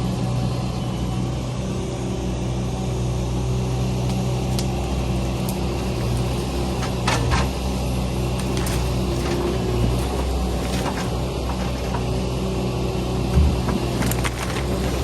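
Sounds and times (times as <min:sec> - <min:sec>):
truck engine running: 0:00.0 - 0:15.0
knocks and rattles: 0:05.9 - 0:07.7, 0:08.3 - 0:12.4, 0:13.1 - 0:15.0.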